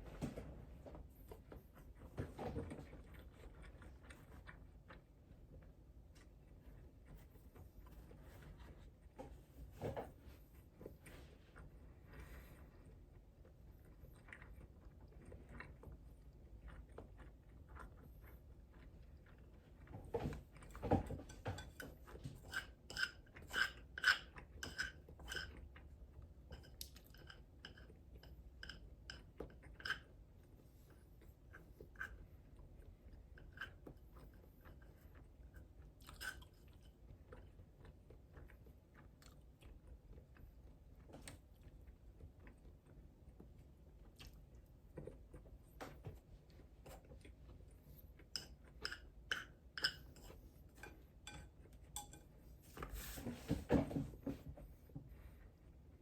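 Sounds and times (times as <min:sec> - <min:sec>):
person chewing crunchy food: 0:22.4 - 0:45.8.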